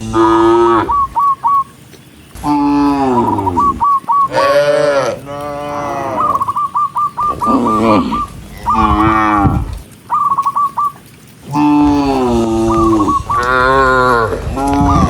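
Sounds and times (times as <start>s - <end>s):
cattle mooing: 0.0s - 1.1s, 2.4s - 6.5s, 7.4s - 9.8s, 11.5s - 15.0s.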